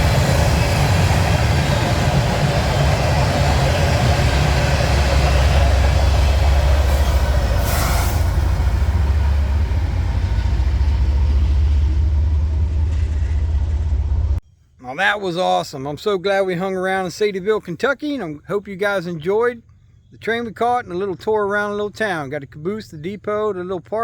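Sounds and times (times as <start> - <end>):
freight train rumbling past: 0.0 - 14.4.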